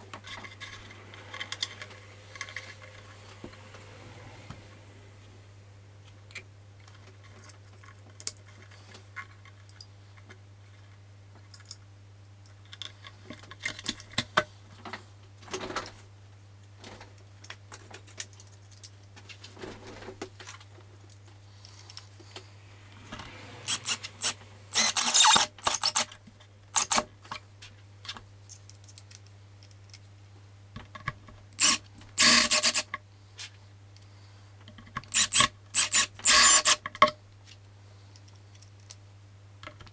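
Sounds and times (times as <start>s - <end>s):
harsh scraping strokes: 22.1s - 26.1s.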